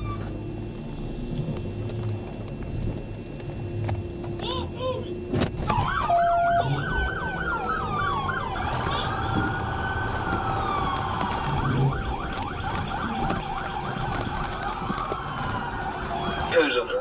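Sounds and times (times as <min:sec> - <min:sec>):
police siren yelp and wail: 0:04.3 - 0:17.0.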